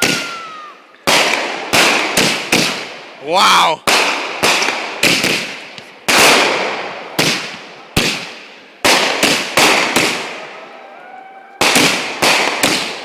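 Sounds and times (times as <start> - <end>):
faint firework whistling: 0.0 - 0.9
fireworks banging: 0.0 - 3.2, 3.8 - 10.7, 11.6 - 13.0.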